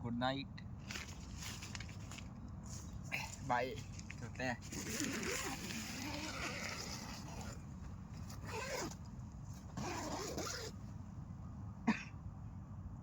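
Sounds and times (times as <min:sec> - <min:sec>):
zipper being pulled: 0:04.6 - 0:09.0, 0:09.6 - 0:10.8.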